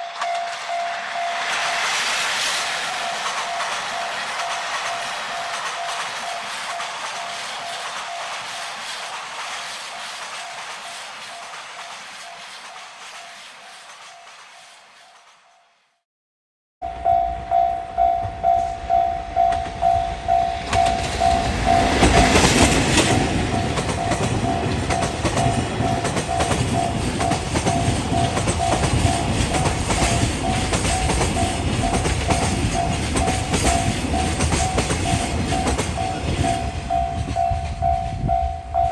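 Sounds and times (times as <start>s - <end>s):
level-crossing warning bell: 0.0s - 1.8s, 2.7s - 8.8s, 16.8s - 38.9s
electric locomotive passing: 0.0s - 15.8s, 16.8s - 38.9s
train wheels clacking over rail joints: 0.1s - 15.6s, 20.6s - 38.4s.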